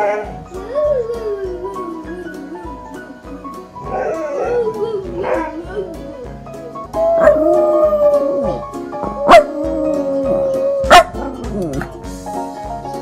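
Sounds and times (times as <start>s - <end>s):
background music with steady beat: 0.0s - 13.0s
dog howling: 3.8s - 6.0s, 7.0s - 11.1s
dog yelping: 7.2s - 7.6s, 9.2s - 11.2s.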